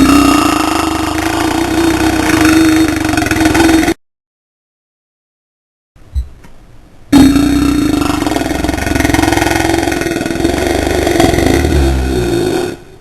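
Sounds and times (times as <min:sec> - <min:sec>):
man burping: 0:00.0 - 0:04.0, 0:07.1 - 0:12.9.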